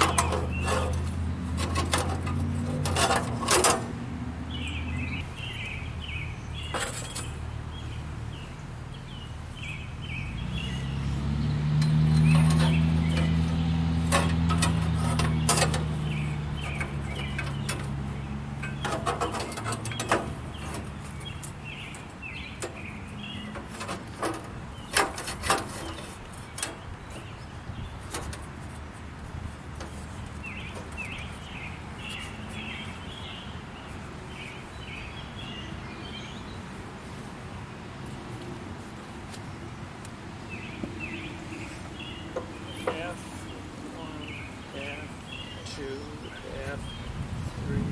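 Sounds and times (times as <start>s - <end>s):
small birds chirping: 0.0s - 3.7s, 4.4s - 47.9s
sharp clicks and knocks: 0.0s - 4.0s, 11.8s - 27.4s, 28.0s - 28.8s
engine: 0.0s - 47.9s.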